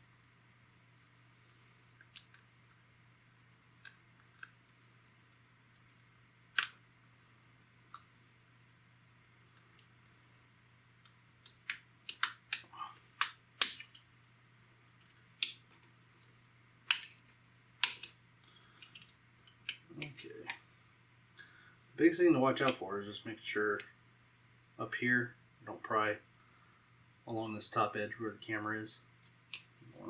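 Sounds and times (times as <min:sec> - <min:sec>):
razor blade prying clicks: 0:11.5 - 0:14.0.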